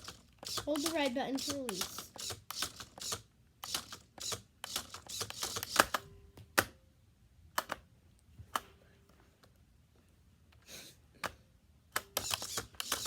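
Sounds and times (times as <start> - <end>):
sharp clicks: 0.0 - 6.0, 12.0 - 13.0
toy plastic clicking and rattling: 0.0 - 6.0, 12.0 - 13.0.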